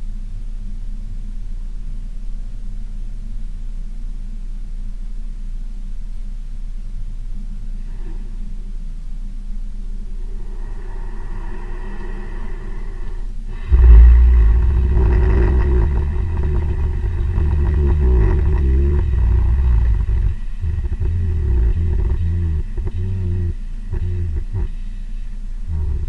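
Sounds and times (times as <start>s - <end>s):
bear snoring: 10.2s - 24.9s, 25.6s - 26.0s.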